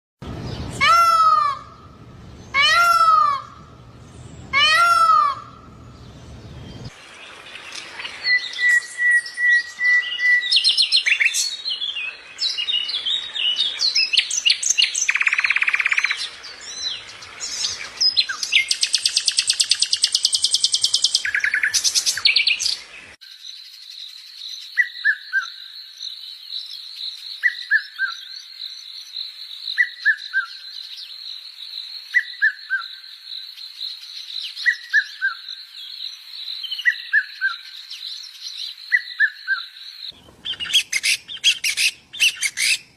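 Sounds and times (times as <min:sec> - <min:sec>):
birds chirping and squawking: 0:00.3 - 0:23.1, 0:39.0 - 0:42.9.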